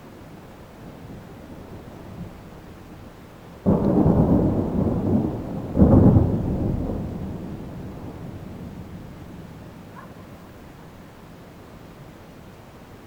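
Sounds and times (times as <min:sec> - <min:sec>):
thunder cracking and rumbling: 0:01.0 - 0:10.8.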